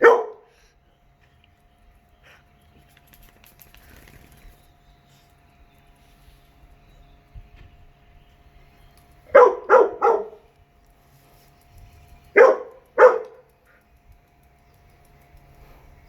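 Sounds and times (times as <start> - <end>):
dogs barking: 0.0 - 0.6, 9.3 - 10.5, 12.3 - 13.6.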